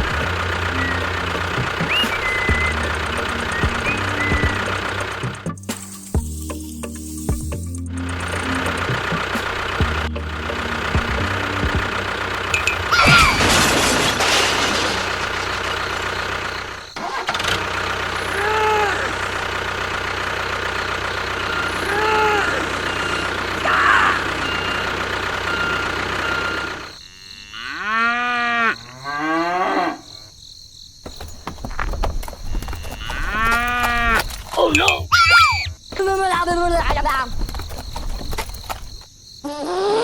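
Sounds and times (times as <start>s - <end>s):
small engine humming: 0.0s - 27.0s
cattle mooing: 25.5s - 30.3s, 32.6s - 34.3s.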